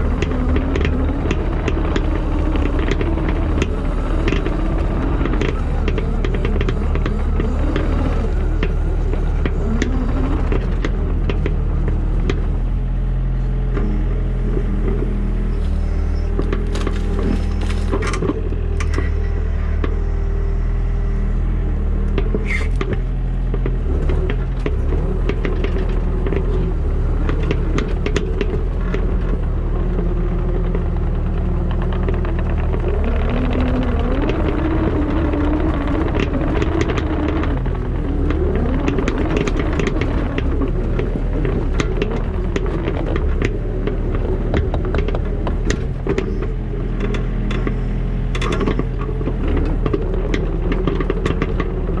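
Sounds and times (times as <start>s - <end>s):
diesel digger engine running: 0.0s - 52.0s
linkage squealing: 13.8s - 21.2s, 22.4s - 22.8s
metal clanks and knocks: 34.2s - 52.0s.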